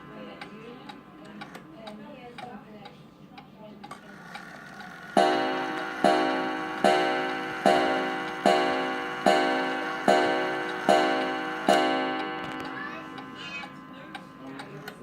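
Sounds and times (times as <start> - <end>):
clock ticking: 0.0 - 15.0
clock gong ringing: 5.1 - 15.0.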